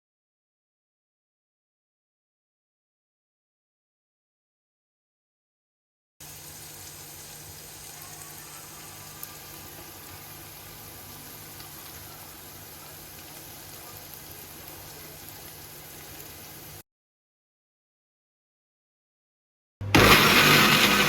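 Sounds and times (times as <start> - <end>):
food hissing in a pot: 6.2 - 16.8.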